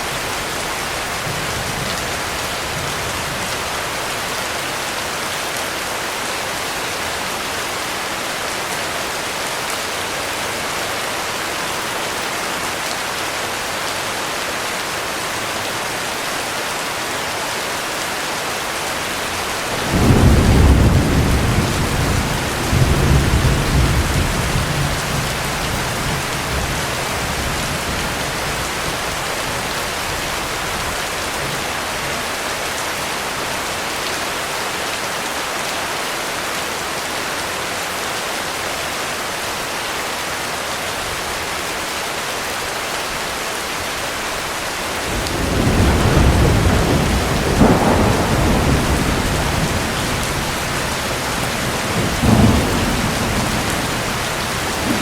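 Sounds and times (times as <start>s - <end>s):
heavy rain falling: 0.0s - 55.0s
thunder rumbling: 19.7s - 31.7s, 45.1s - 55.0s.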